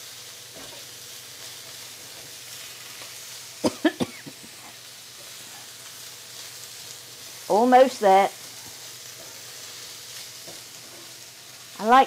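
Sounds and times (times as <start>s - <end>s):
shrimp sizzling in oil: 0.0s - 12.0s
person coughing: 3.6s - 4.7s.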